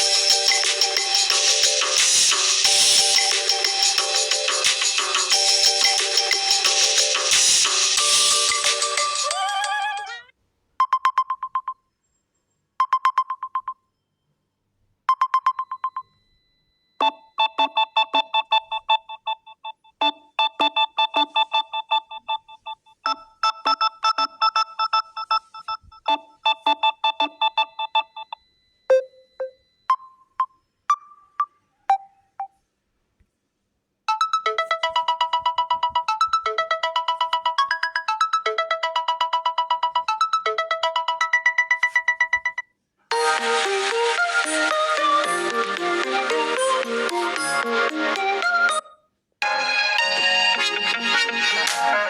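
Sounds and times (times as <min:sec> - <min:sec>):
phone ringtone beeps: 0:00.0 - 0:10.1, 0:10.8 - 0:11.8, 0:12.8 - 0:14.2, 0:15.1 - 0:32.6, 0:34.1 - 0:42.7
rapid chiming ringtone tune: 0:00.0 - 0:10.2, 0:15.1 - 0:32.2, 0:34.1 - 0:47.8.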